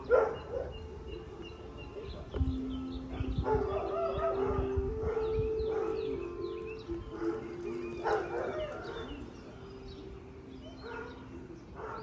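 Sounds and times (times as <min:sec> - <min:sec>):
dog barking: 0:00.0 - 0:00.8, 0:03.2 - 0:06.2, 0:07.2 - 0:09.2, 0:10.8 - 0:12.0
birds chirping: 0:00.0 - 0:12.0.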